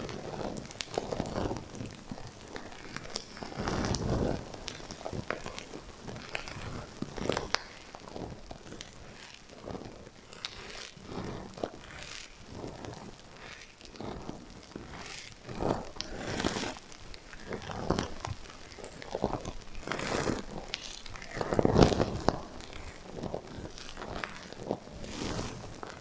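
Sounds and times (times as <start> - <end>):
hand brushing sequins: 0.0 - 26.0.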